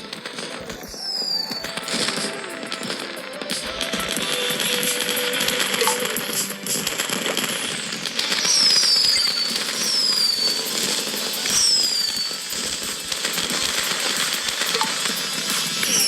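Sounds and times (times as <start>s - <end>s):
falling firework whistles: 0.0s - 16.0s
fireworks crackling: 0.0s - 16.0s.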